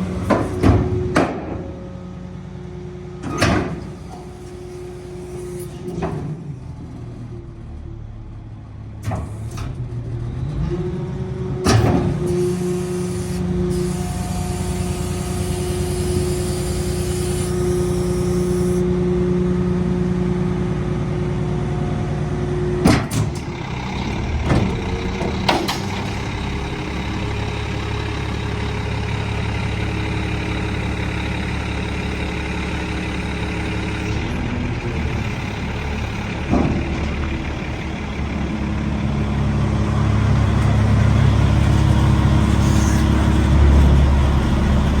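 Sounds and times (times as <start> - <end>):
diesel truck engine running: 0.0 - 45.0.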